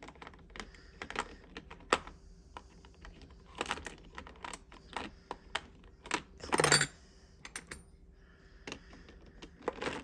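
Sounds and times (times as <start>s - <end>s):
metal tool pieces clicking on plastic: 6.1s - 6.9s.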